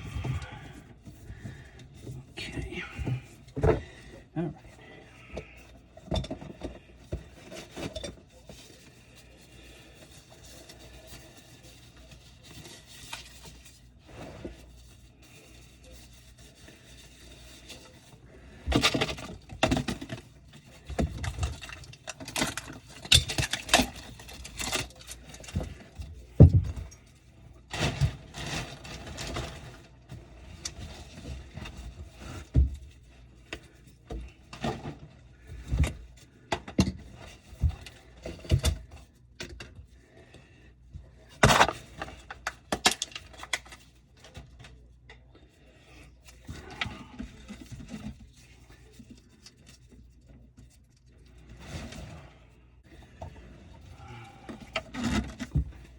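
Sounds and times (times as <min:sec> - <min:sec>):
tools and parts clattering: 0:05.5 - 0:08.7, 0:18.6 - 0:27.0.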